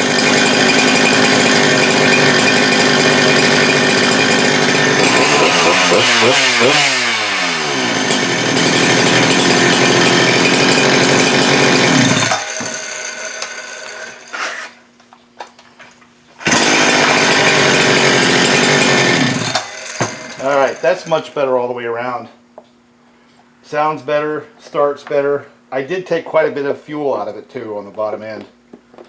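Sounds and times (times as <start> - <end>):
chainsaw engine running hard: 0.0 - 14.7, 16.4 - 21.3.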